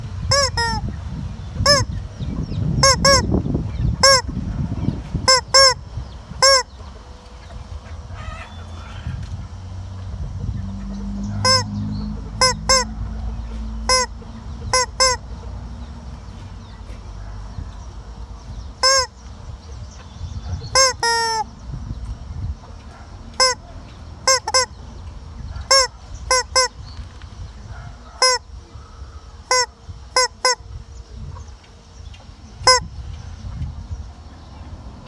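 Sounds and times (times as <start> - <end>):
hen squawking: 0.0 - 0.9, 1.6 - 1.9, 2.8 - 3.4, 4.0 - 4.3, 5.3 - 5.8, 6.4 - 6.7, 11.4 - 13.0, 13.8 - 15.3, 18.8 - 19.2, 20.7 - 21.5, 23.4 - 24.8, 25.6 - 26.8, 28.2 - 28.4, 29.4 - 30.6, 32.6 - 32.9.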